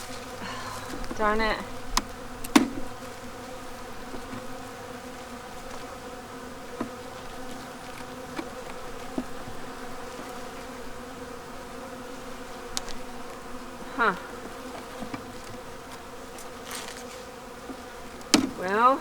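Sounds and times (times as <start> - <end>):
bees buzzing: 0.0 - 19.0.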